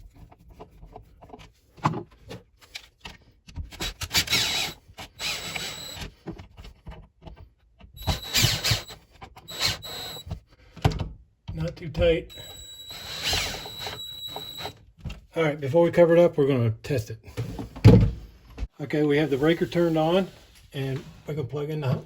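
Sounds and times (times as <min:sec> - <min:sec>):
power screwdriver whine: 0:03.8 - 0:06.1, 0:08.0 - 0:10.3, 0:12.3 - 0:14.8.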